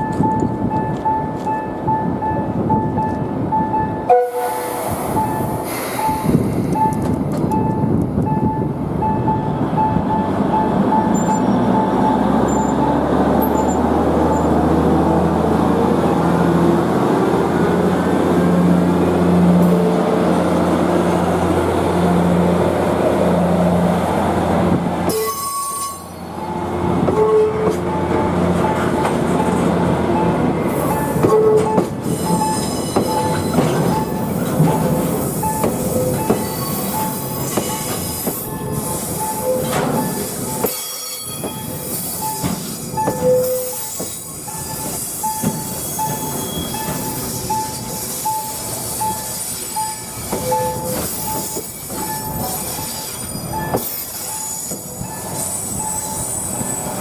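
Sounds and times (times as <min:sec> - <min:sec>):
train rumble: 0:00.0 - 0:57.0
train wheels squealing on rails: 0:04.2 - 0:07.8, 0:10.2 - 0:14.6, 0:25.1 - 0:28.0, 0:30.6 - 0:57.0.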